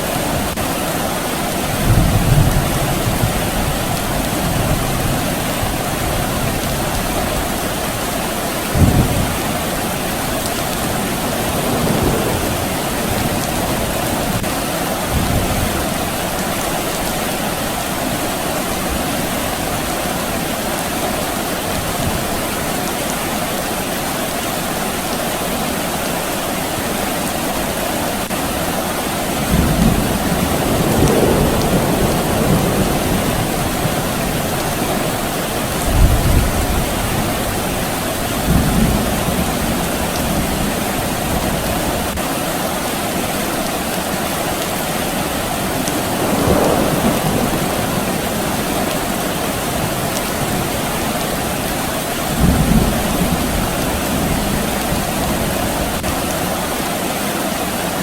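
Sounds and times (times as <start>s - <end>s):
steady rain falling: 0.0s - 58.0s
distant thunder rumbles: 1.7s - 7.8s, 8.4s - 14.5s, 29.4s - 42.2s, 45.4s - 56.1s.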